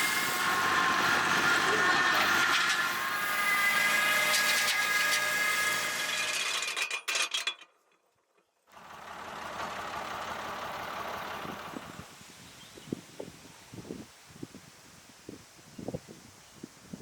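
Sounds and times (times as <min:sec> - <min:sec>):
machine rushing noise: 0:00.0 - 0:06.3
flail mulcher running with whine: 0:00.0 - 0:06.9.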